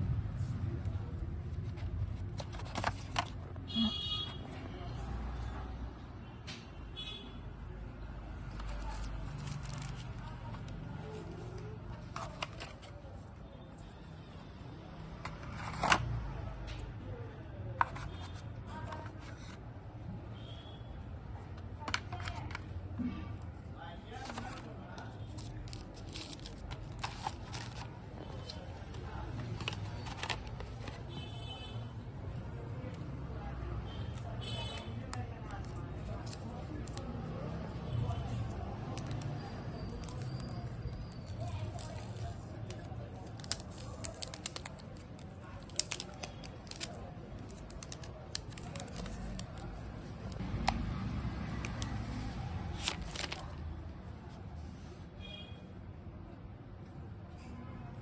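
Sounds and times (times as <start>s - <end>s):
packaging crinkling and clicking: 25.3s - 27.9s, 29.4s - 31.0s, 38.9s - 49.7s, 52.7s - 53.6s.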